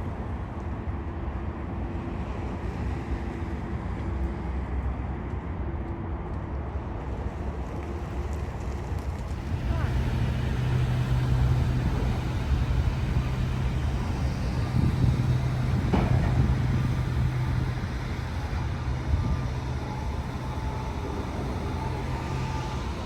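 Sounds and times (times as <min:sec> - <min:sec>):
car interior road noise: 0:09.2 - 0:23.0.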